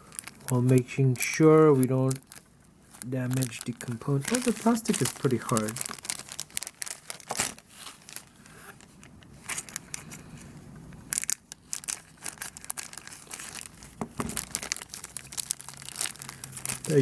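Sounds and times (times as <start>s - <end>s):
plastic packaging crinkling: 0.0s - 17.0s.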